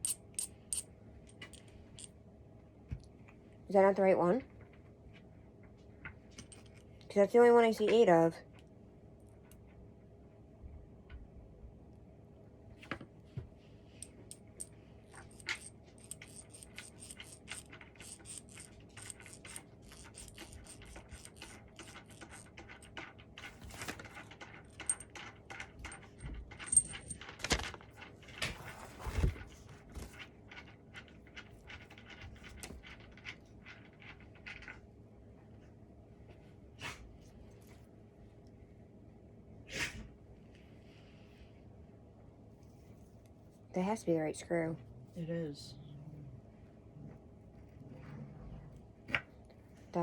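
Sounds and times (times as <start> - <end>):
metal screws clinking: 0.0 - 2.1, 14.0 - 27.3.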